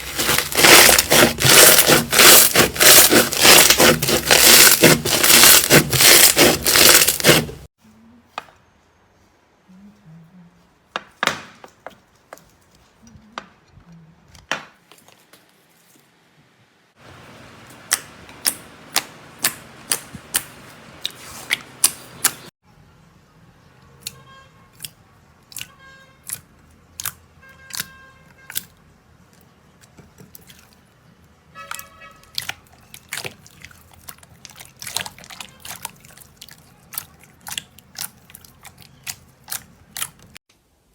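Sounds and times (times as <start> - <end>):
slime rasping scrape: 0.0 - 7.7, 31.7 - 40.4.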